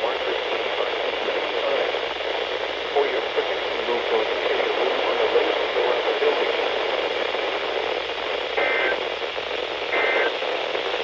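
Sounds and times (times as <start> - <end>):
radio static hiss: 0.0 - 11.0
warbling two-tone data bursts: 8.6 - 9.0, 10.0 - 10.3.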